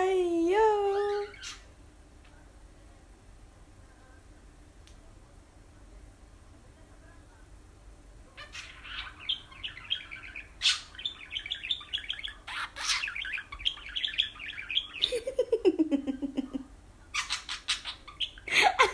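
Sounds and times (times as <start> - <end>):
budgerigar warbling and chirping: 1.2 - 1.7, 8.4 - 15.1, 17.2 - 18.5.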